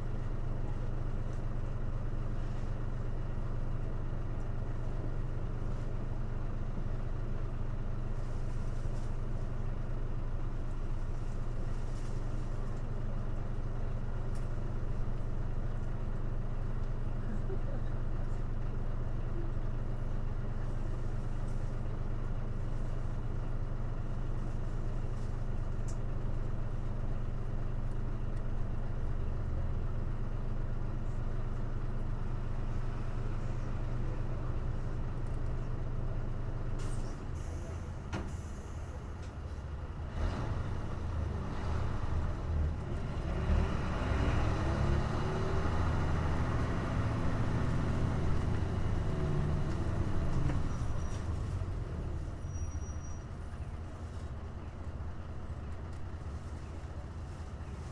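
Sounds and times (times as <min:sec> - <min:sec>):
bus engine running: 0:00.0 - 0:57.9
air brakes hissing: 0:36.8 - 0:39.1.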